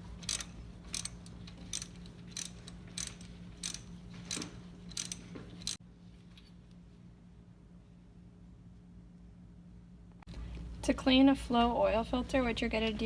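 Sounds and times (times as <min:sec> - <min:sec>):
low steady hum: 0:00.0 - 0:13.0
ratchet wrench clicking: 0:00.2 - 0:05.8.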